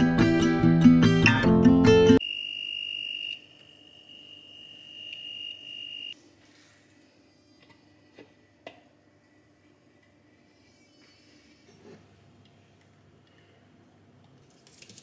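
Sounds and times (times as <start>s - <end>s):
high-pitched electronic tone: 2.2s - 6.2s.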